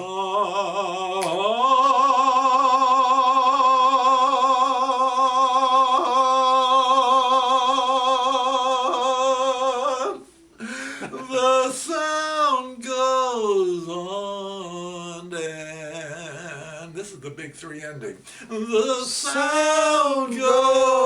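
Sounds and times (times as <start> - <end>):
finger snap: 1.2 - 1.5
man singing held note: 18.4 - 21.0.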